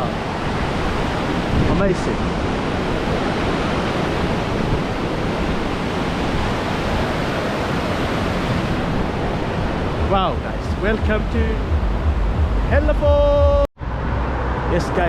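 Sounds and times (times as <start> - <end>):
river water rushing: 0.0 - 10.7.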